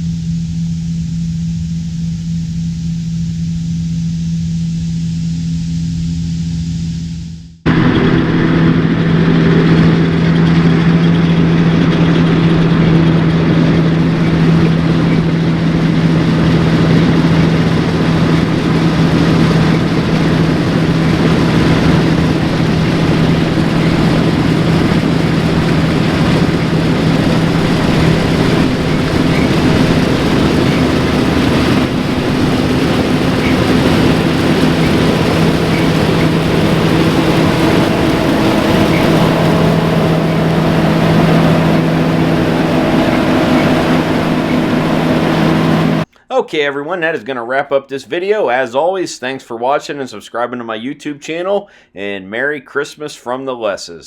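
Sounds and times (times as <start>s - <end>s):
diesel combine engine hum: 0.0s - 46.2s
mechanical clatter: 7.7s - 46.0s.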